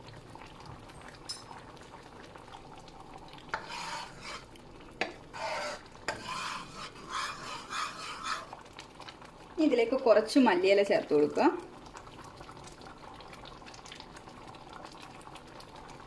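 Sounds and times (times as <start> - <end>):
low bubbling of simmering food: 0.0 - 16.0
spoon scraping a pot: 3.5 - 8.6.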